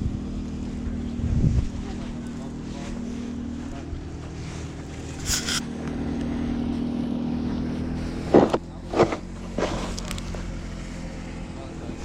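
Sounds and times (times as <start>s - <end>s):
car engine running: 0.0s - 12.0s
snow shovel scraping: 4.4s - 5.7s, 7.8s - 10.5s.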